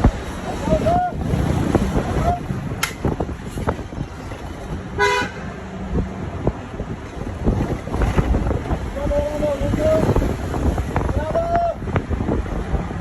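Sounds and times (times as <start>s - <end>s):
vehicle rumbling on the move: 0.0s - 13.0s
vehicle horn toot: 5.0s - 5.5s.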